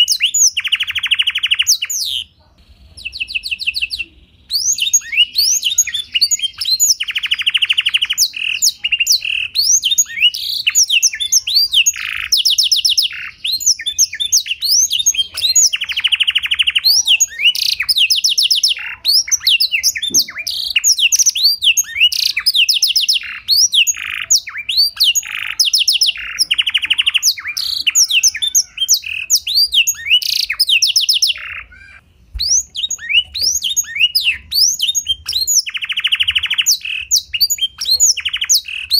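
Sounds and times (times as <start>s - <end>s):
canary singing: 0.0s - 38.9s.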